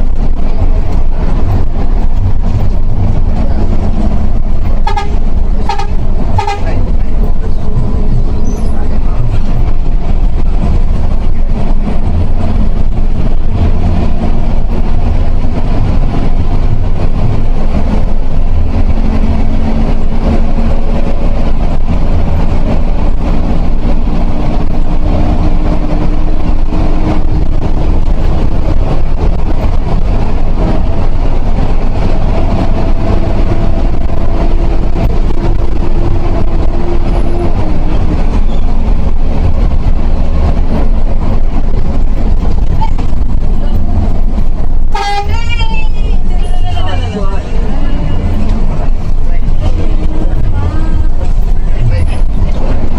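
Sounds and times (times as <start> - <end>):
bus engine and road noise: 0.0 - 52.9.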